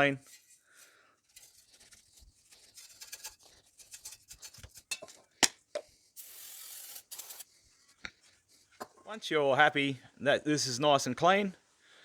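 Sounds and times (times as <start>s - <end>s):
wire brush scrubbing metal: 1.4s - 4.9s, 6.2s - 7.5s
aerosol can spraying: 6.2s - 7.5s.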